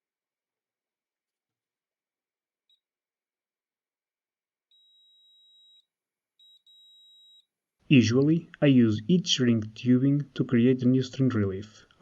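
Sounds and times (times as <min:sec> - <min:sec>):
multimeter continuity beep: 0:04.7 - 0:07.5.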